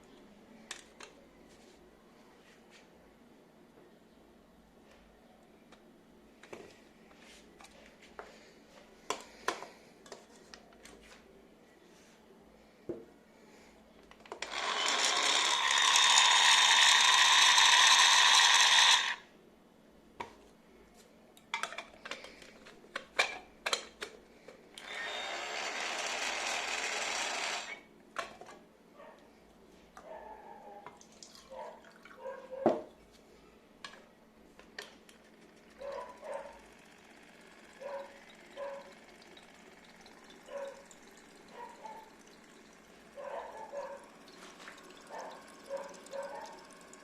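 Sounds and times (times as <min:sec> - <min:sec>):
blender motor running: 0:14.4 - 0:19.2, 0:24.8 - 0:27.8, 0:35.6 - 0:43.0.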